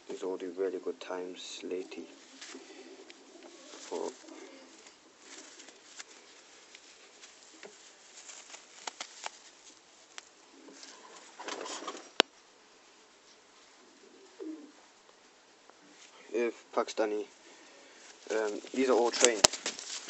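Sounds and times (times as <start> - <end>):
pigeons cooing: 1.4 - 7.7, 10.4 - 12.2, 13.8 - 15.0
small clicks and scuffs: 2.3 - 11.0, 18.0 - 20.0.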